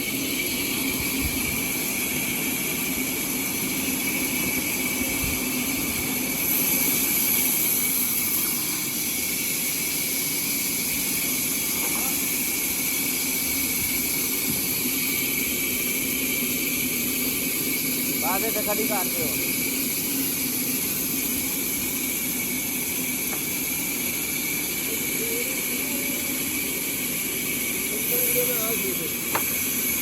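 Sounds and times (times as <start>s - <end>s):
sawmill saw hissing and whining: 0.0s - 30.0s.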